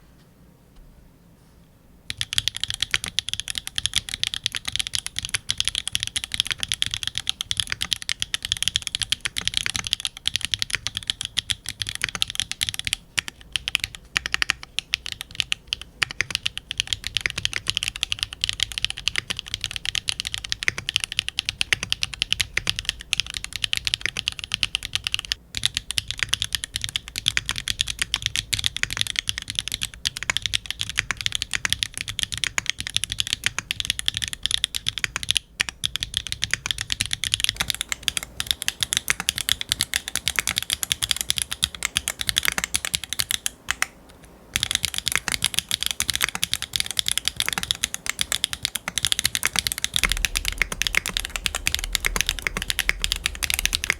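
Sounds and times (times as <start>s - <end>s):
fast mechanical keyboard typing: 2.1s - 53.9s.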